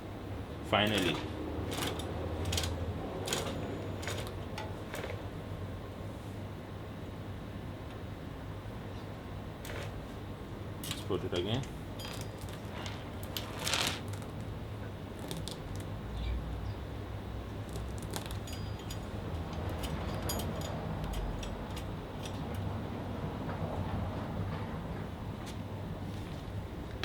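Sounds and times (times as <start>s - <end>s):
bicycle parts clinking: 0.8s - 5.3s, 9.6s - 10.0s, 10.8s - 14.4s, 17.7s - 22.7s.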